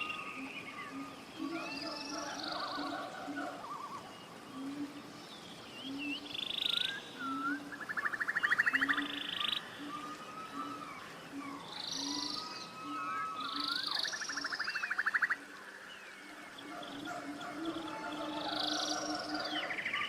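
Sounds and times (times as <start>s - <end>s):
buzzy bird trills: 5.9s - 15.4s.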